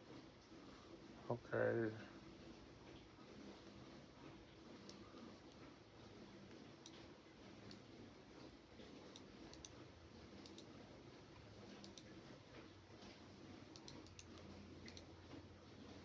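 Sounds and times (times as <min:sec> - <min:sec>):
low room hiss: 0:00.0 - 0:16.0
computer mouse clicks: 0:04.7 - 0:05.7, 0:06.4 - 0:07.9, 0:08.8 - 0:10.8, 0:11.6 - 0:12.2, 0:13.7 - 0:15.2.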